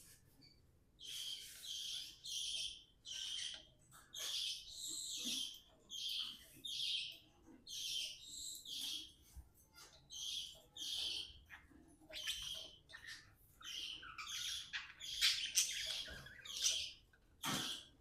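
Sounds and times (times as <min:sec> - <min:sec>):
budgerigars chirping: 0:01.0 - 0:18.0.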